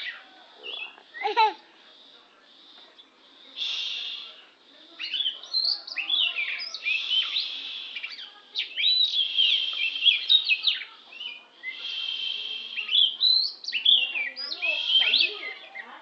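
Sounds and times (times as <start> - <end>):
bird singing whistles: 5.0 - 15.6.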